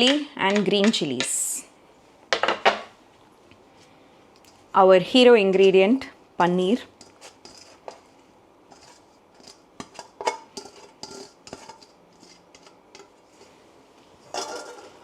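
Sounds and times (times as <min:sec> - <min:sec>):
utensils clinking on dishes: 0:14.2 - 0:15.0.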